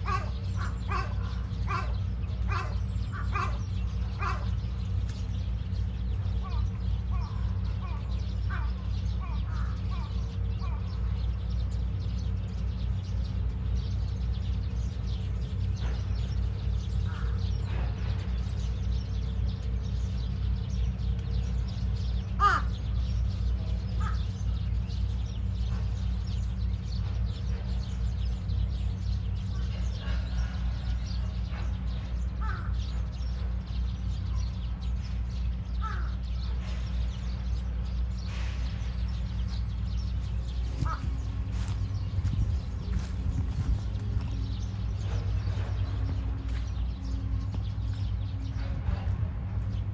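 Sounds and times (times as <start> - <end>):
crows cawing: 0.0 - 4.7, 6.4 - 10.9, 17.0 - 17.6, 22.4 - 23.2, 23.9 - 24.6, 32.4 - 33.0, 35.7 - 36.5, 40.2 - 41.8
steady low rumble: 0.0 - 49.9.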